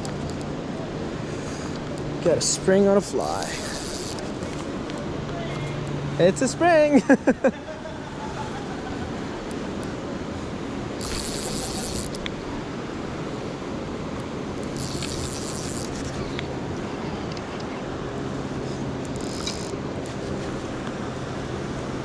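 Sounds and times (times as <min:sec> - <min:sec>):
high hissy buzzes: 0:01.2 - 0:04.4, 0:10.9 - 0:12.6, 0:14.6 - 0:16.4.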